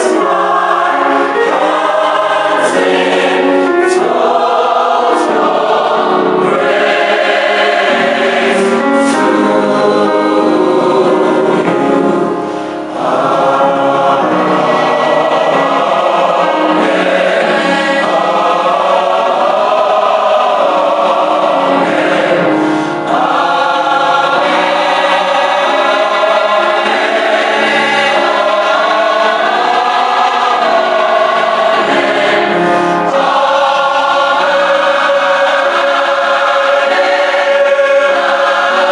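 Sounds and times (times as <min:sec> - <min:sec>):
church choir singing gospel: 0:00.0 - 0:38.9.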